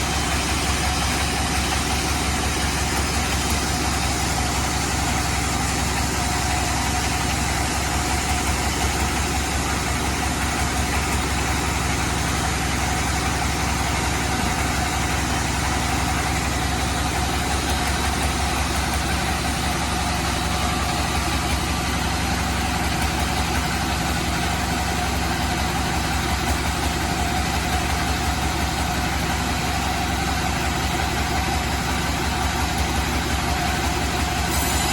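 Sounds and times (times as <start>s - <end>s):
band saw sawing wood: 34.4s - 34.9s.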